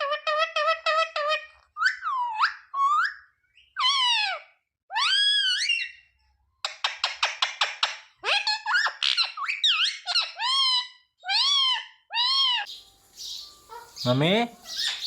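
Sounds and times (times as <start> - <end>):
parrot calling: 6.8 - 15.0.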